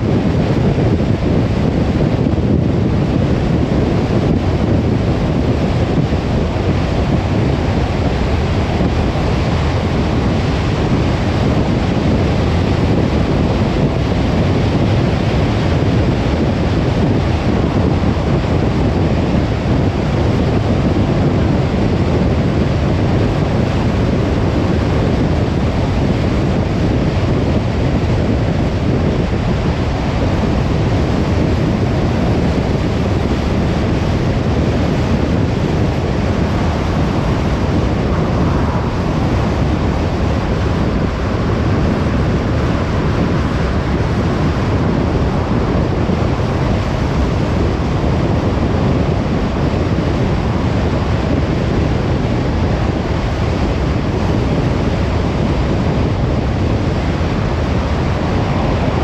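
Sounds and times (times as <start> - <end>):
car road noise: 0.0 - 59.0.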